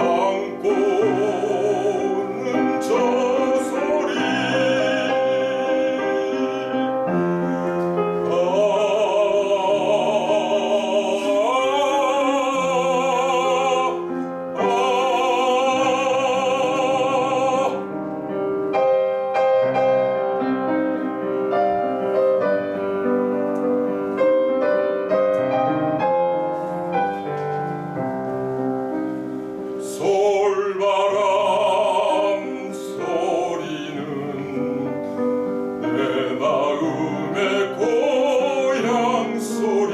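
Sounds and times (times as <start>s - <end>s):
man singing operatically: 0.0s - 18.0s, 29.8s - 39.9s
piano accompaniment: 0.0s - 39.9s.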